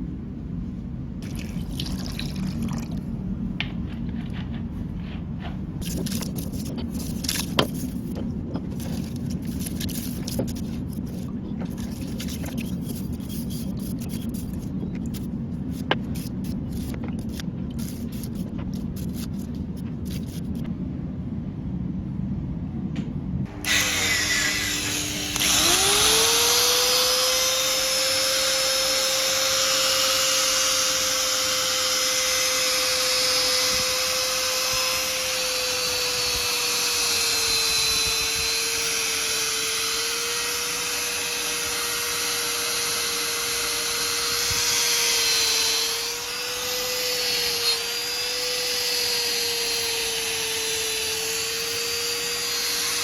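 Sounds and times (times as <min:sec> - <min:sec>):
electric power tool spinning: 0:23.5 - 0:53.0.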